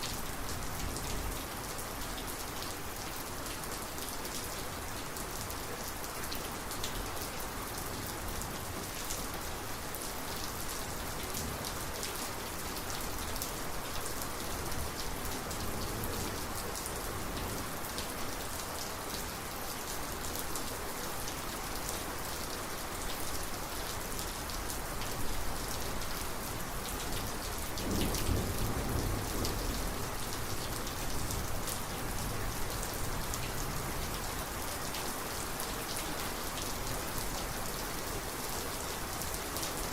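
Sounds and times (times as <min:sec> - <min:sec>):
heavy rain drops: 0:00.0 - 0:39.9
low rumble of thunder: 0:27.8 - 0:31.6.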